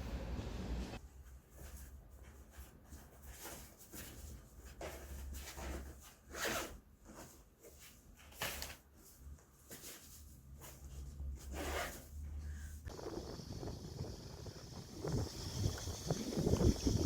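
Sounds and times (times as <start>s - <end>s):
rustling and scraping handling noises: 1.0s - 12.9s.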